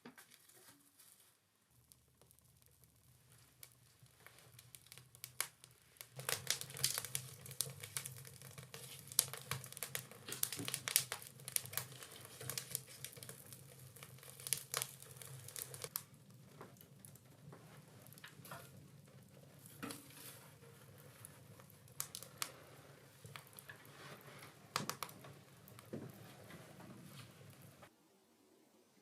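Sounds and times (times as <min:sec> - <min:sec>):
wrapping crinkling and tearing: 0:04.2 - 0:16.0.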